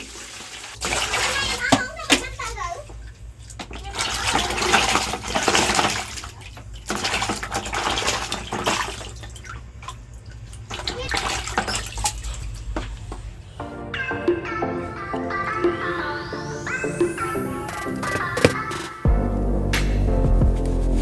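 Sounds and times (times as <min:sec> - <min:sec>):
water splashing and sloshing: 0:00.0 - 0:13.6, 0:17.6 - 0:19.0.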